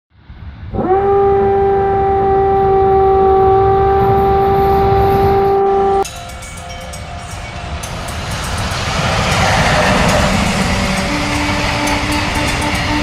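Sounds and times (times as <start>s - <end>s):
train horn blast: 0.7s - 6.0s, 8.6s - 13.0s.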